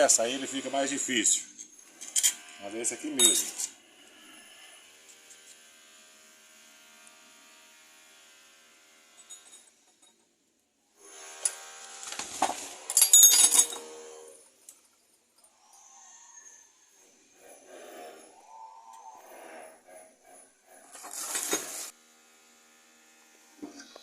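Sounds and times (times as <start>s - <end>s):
metal parts clinking and rattling: 3.2s - 3.7s, 9.2s - 10.3s, 11.4s - 15.6s.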